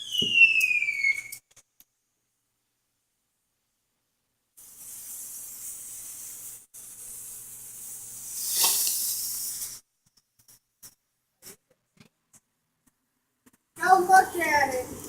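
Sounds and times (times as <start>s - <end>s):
ground firework hissing: 4.6s - 9.8s.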